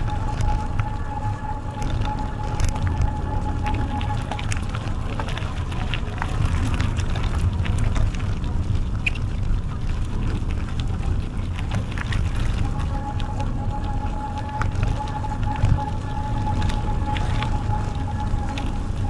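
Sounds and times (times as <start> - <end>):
thin high tone: 0.0 - 6.2
bicycle tyres rumbling: 0.0 - 19.0
wind on microphone: 0.0 - 19.0.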